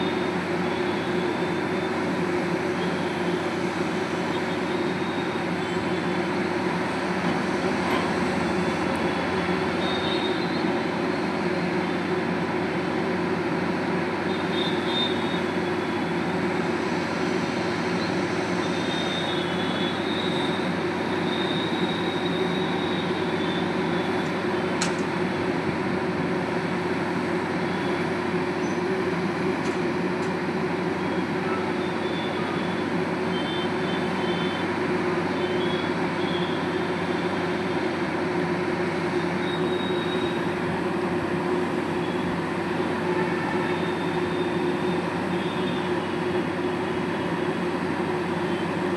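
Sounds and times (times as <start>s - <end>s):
heavy drilling machine running: 0.0s - 48.9s.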